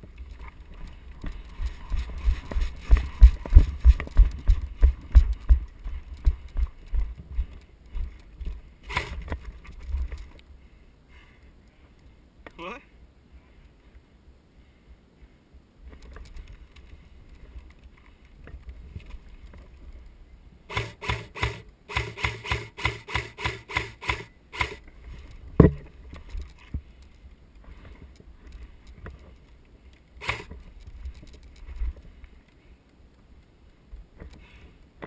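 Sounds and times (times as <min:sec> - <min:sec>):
airsoft gun shots: 0:20.7 - 0:24.8
sharp knock: 0:25.6 - 0:25.8.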